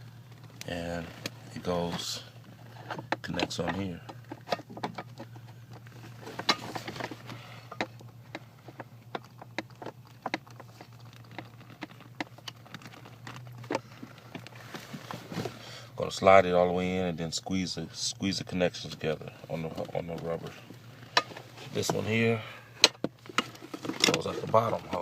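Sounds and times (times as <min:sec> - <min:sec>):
steady low hum: 0:00.0 - 0:25.0
metal lines clicking and tapping: 0:02.8 - 0:14.6.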